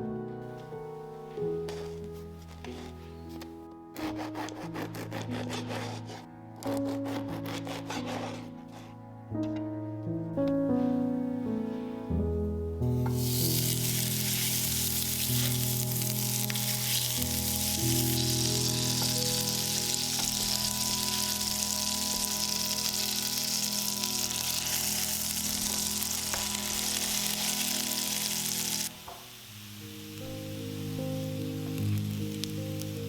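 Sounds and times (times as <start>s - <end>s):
background music: 0.0s - 33.0s
food sizzling in a pan: 12.9s - 33.0s.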